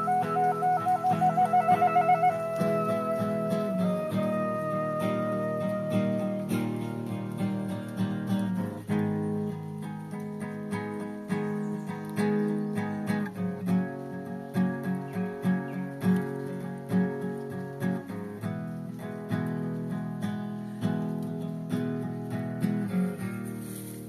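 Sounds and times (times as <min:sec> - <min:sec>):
acoustic guitar playing: 0:00.0 - 0:24.0.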